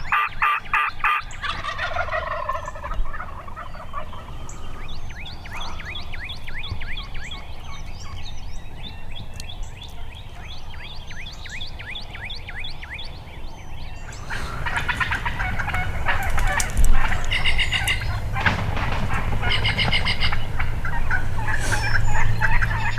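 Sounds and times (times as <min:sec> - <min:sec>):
wind rumble on microphone: 0:00.0 - 0:22.9
rattling crackling noise: 0:14.4 - 0:22.9.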